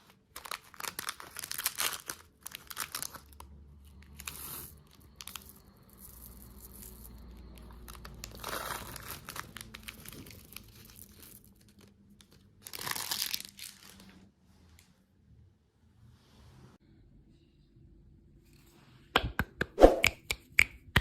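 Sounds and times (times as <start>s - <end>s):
plastic wrappers crinkling and tearing: 0.0s - 14.3s.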